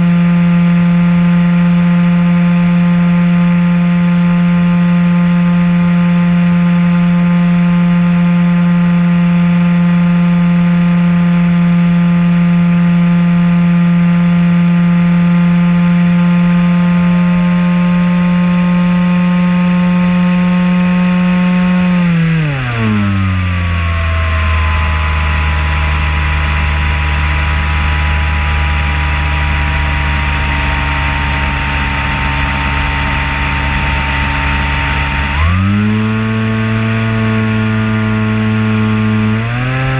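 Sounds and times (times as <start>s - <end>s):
model aircraft motor and propeller: 0.0s - 39.9s.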